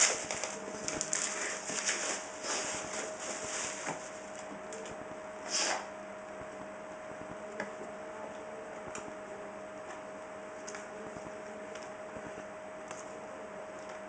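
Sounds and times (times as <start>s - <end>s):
packaging rustle: 0.0s - 4.9s
faint steady hum: 0.0s - 14.0s.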